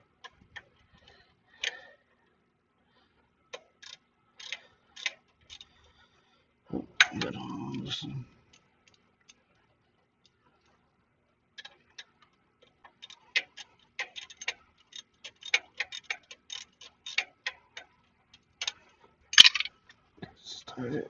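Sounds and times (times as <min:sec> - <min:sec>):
ratchet wrench clicking: 0:12.9 - 0:17.8.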